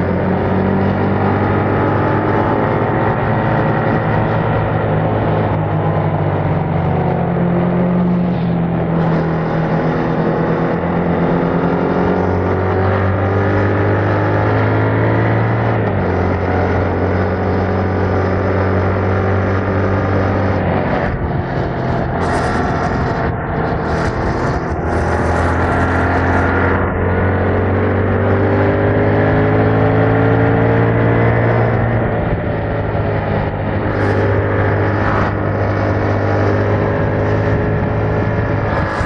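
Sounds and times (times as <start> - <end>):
motorcycle engine running: 20.7 - 27.6, 32.0 - 39.0.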